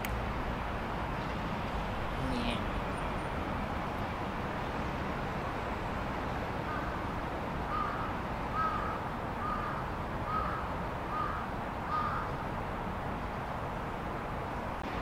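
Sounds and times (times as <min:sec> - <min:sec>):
distant traffic hum: 0:00.0 - 0:15.0
crow cawing: 0:07.7 - 0:12.3.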